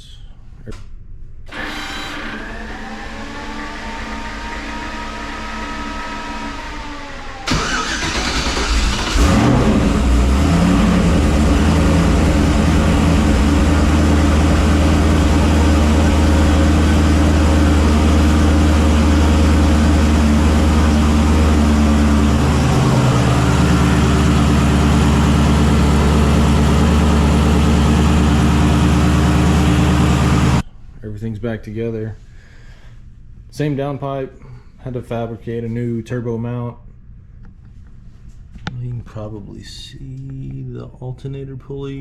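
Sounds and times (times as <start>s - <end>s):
engine starter cranking: 7.5s - 10.4s
car engine idling: 7.5s - 30.6s.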